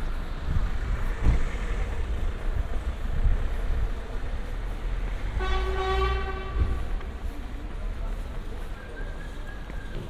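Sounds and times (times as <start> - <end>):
street traffic rumbling: 0.0 - 10.0
vehicle horn: 5.4 - 6.8.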